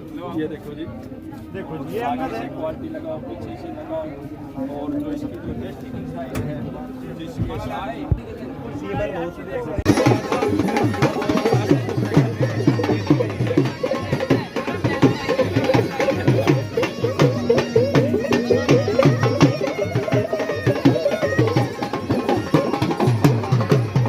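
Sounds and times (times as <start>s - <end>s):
folk music with fast drum beat: 9.8s - 24.0s.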